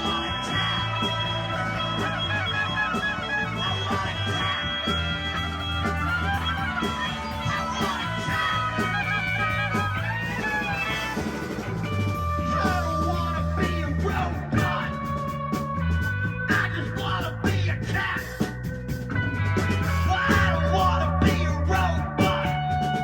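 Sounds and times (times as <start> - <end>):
electric guitar lines: 0.0 - 13.9
bass notes: 0.0 - 23.0
drums and cymbals: 0.0 - 23.0.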